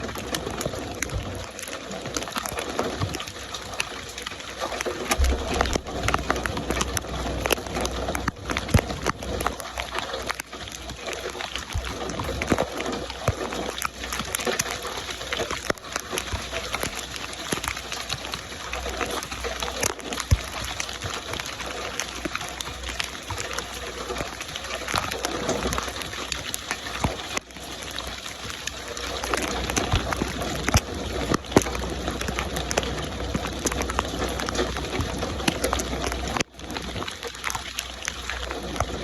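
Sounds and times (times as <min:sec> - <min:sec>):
rain hiss: 0:00.0 - 0:39.0
raindrops ticking: 0:00.0 - 0:39.0
low rumble: 0:05.2 - 0:09.3.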